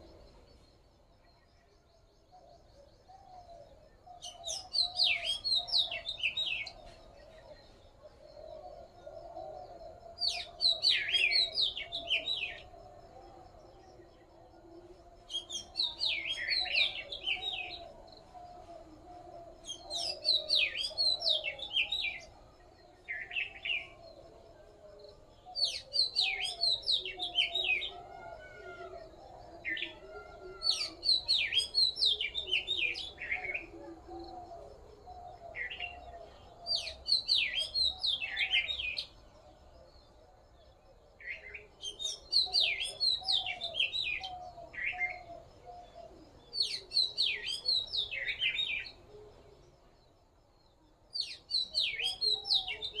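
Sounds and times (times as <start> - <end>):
songbird chirping: 0.0 - 53.0.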